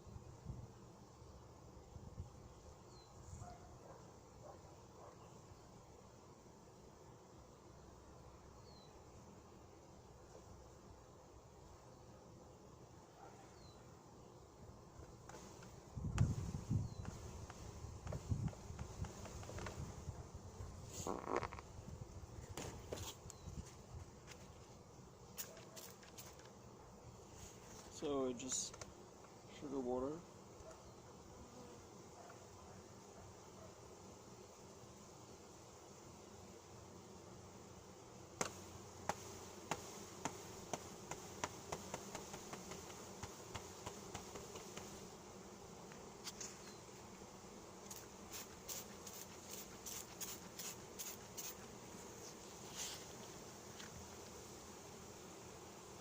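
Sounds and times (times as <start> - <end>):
honeybees buzzing: 0.0 - 56.0
short hissing bursts: 47.9 - 53.3.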